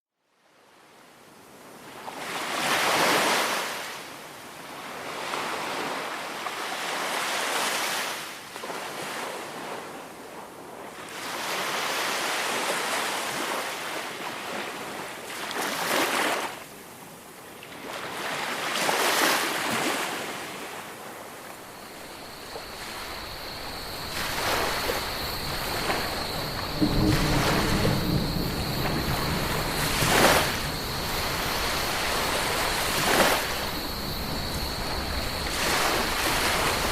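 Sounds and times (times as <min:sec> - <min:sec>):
small waves washing up beach: 0:01.7 - 0:36.9
steady high-pitched tone: 0:21.5 - 0:36.9
low rumble: 0:21.6 - 0:36.9.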